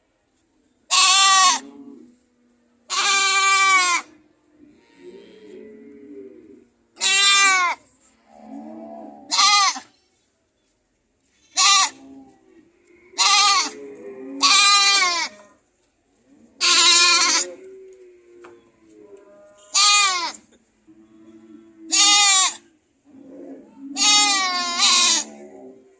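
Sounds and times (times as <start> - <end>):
low goat bleats: 0.9 - 2.1, 2.9 - 5.6, 9.1 - 9.9, 11.4 - 12.1, 13.0 - 15.6, 16.6 - 18.9, 19.5 - 22.7, 23.6 - 25.8
goats screaming: 13.2 - 13.8, 14.4 - 15.4, 16.6 - 17.5, 19.7 - 20.4, 21.9 - 22.6, 24.0 - 25.4.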